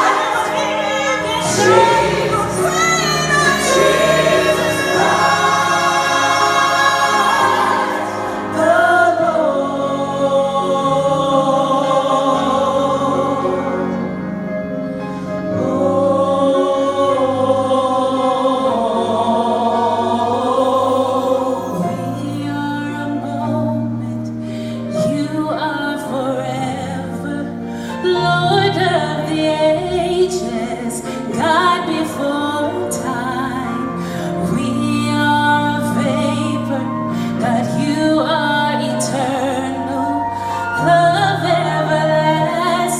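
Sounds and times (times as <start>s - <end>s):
held chords: 0.0s - 11.2s, 19.7s - 25.3s
voices singing with vibrato: 0.0s - 14.0s, 15.5s - 24.0s
percussion: 20.3s - 23.4s.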